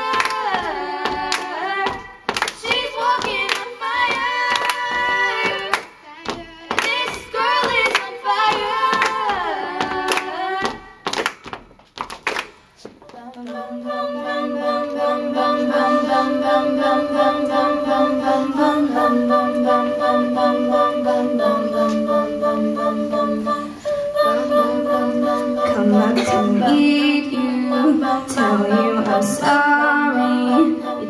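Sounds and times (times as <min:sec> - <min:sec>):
a cappella group singing: 0:00.0 - 0:11.1, 0:13.0 - 0:31.0
hand claps: 0:00.1 - 0:13.6.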